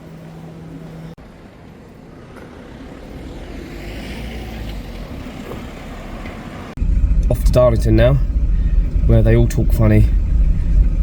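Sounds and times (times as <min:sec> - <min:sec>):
motor vehicle passing: 0:02.2 - 0:07.3.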